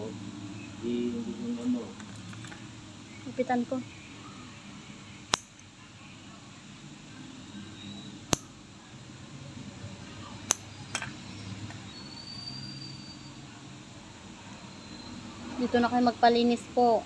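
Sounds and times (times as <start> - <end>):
faint room noise: 0.0 - 17.0
toenail nipper clicks: 5.3 - 5.6, 8.3 - 8.5, 10.5 - 11.2.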